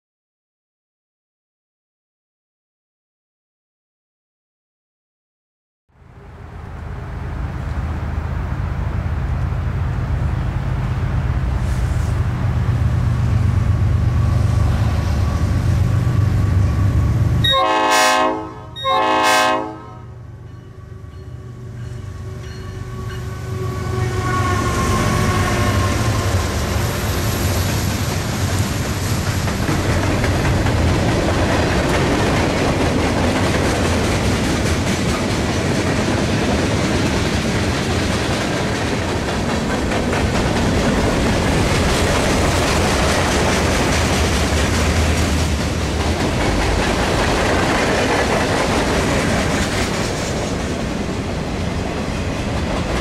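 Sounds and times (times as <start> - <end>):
freight train rumbling: 6.0 - 53.0
air horn blasts: 17.4 - 21.0, 22.2 - 26.5.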